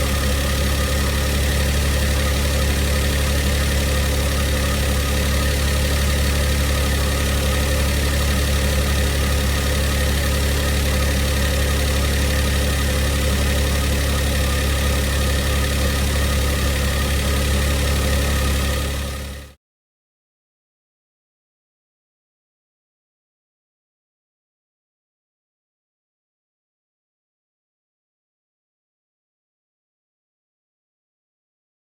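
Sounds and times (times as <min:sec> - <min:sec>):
car engine idling: 0:00.0 - 0:19.5
engine whirring: 0:00.0 - 0:19.5
engine rattle: 0:00.0 - 0:19.6.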